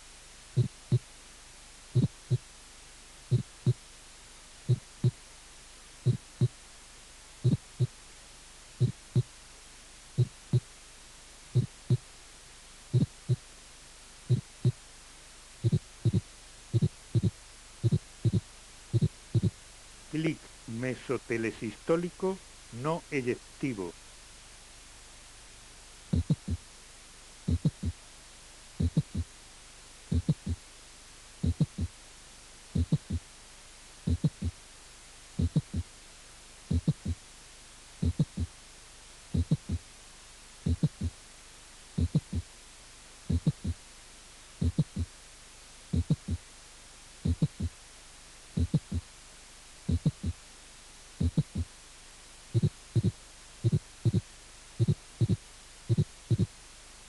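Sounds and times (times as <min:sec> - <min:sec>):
heartbeat through stethoscope: 0:00.0 - 0:01.1, 0:01.9 - 0:02.5, 0:03.3 - 0:03.9, 0:04.6 - 0:05.2, 0:06.0 - 0:06.6, 0:07.4 - 0:08.0, 0:08.8 - 0:09.4, 0:10.1 - 0:10.7, 0:11.5 - 0:12.1, 0:12.9 - 0:13.5, 0:14.3 - 0:14.8, 0:15.6 - 0:19.6, 0:26.1 - 0:26.6, 0:27.4 - 0:28.0, 0:28.8 - 0:29.3, 0:30.1 - 0:30.6, 0:31.4 - 0:32.0, 0:32.7 - 0:33.3, 0:34.0 - 0:34.6, 0:35.4 - 0:35.9, 0:36.7 - 0:37.2, 0:38.0 - 0:38.6, 0:39.3 - 0:39.9, 0:40.6 - 0:41.2, 0:42.0 - 0:42.5, 0:43.3 - 0:43.8, 0:44.6 - 0:45.1, 0:45.9 - 0:46.5, 0:47.2 - 0:47.8, 0:48.5 - 0:49.1, 0:49.8 - 0:50.4, 0:51.2 - 0:51.7, 0:52.5 - 0:56.6.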